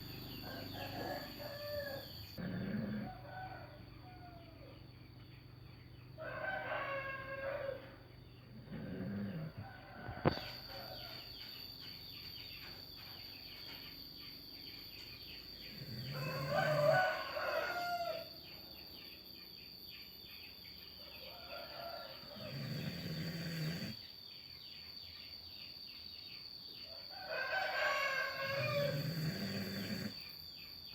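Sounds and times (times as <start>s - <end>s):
person snoring: 2.4s - 3.1s, 22.4s - 24.0s, 28.4s - 30.2s.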